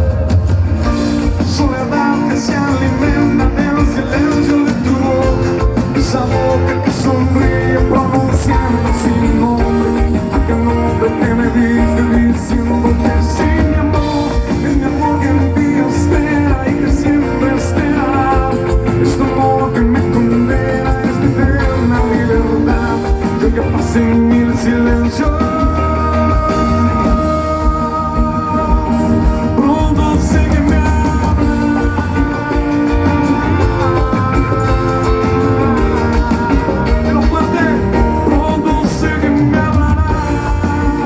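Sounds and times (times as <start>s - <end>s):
live band playing rock ballad: 0.0s - 41.0s.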